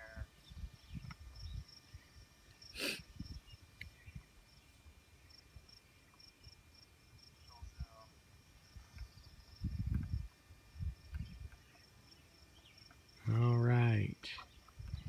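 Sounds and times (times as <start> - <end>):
high insect chirping: 0.1 - 15.0.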